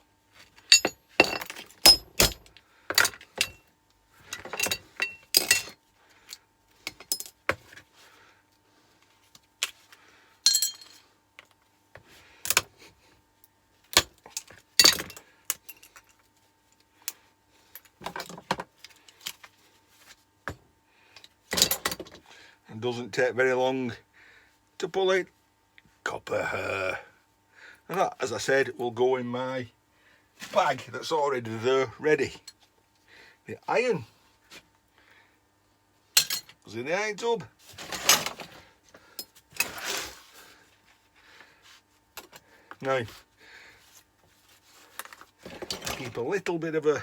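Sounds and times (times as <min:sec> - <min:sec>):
clicks taps and metallic clinks: 0:00.6 - 0:03.6, 0:04.3 - 0:05.8, 0:10.5 - 0:11.0.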